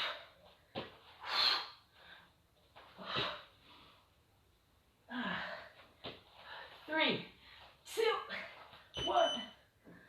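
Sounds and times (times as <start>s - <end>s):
woman breathing hard: 1.1s - 4.0s, 5.1s - 7.8s.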